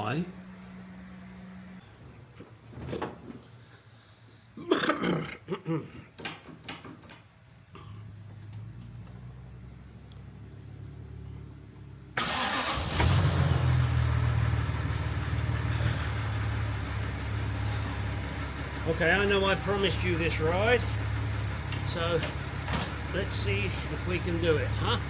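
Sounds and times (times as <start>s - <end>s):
car engine idling: 0.0s - 2.1s, 8.0s - 25.0s.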